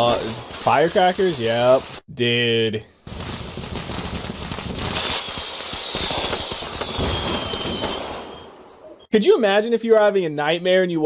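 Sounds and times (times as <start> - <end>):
firecrackers crackling: 0.0 - 2.0, 3.0 - 8.8
high whistle gliding down: 5.0 - 9.1.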